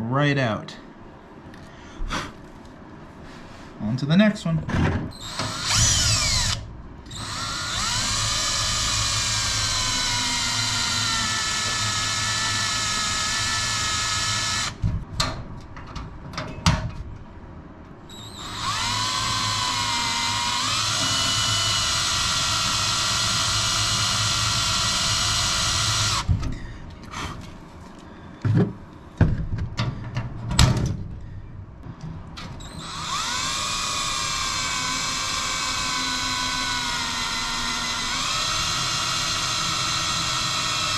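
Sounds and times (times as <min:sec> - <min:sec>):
power drill drilling rivets: 0:05.2 - 0:14.8, 0:18.1 - 0:26.3.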